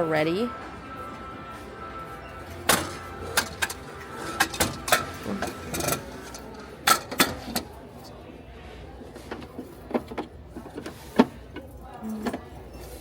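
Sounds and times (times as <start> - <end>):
low store hum: 0.0 - 13.0
hard objects clicking and clacking: 2.7 - 7.7.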